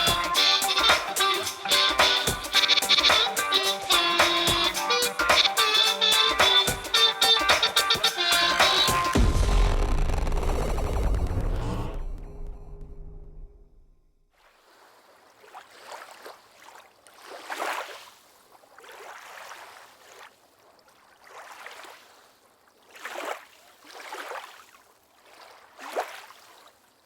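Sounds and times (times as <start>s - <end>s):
background music: 0.0s - 13.8s
water lapping and sloshing: 14.4s - 27.0s.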